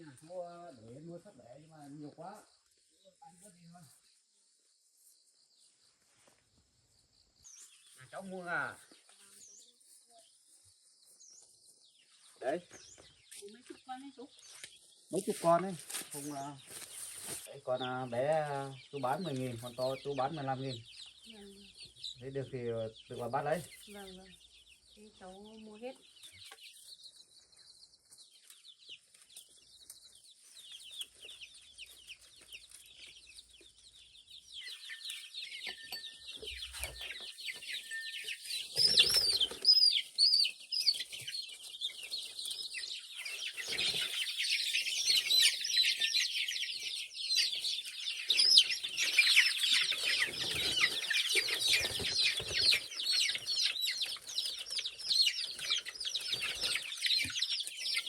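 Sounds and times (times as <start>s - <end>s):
chickens clucking and squawking: 5.8s - 58.0s
wings flapping: 38.8s - 39.8s, 49.9s - 53.0s.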